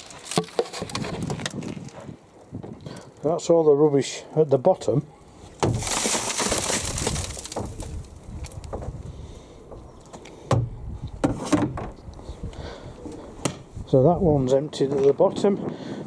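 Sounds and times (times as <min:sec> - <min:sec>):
dust container rustling rush: 0:05.7 - 0:08.2.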